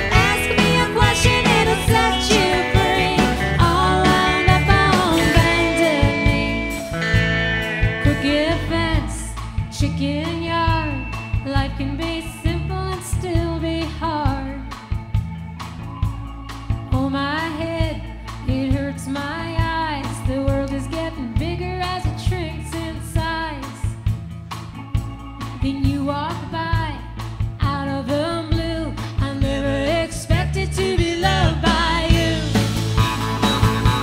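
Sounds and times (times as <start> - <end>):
song with sung vocals: 0.0 - 34.0.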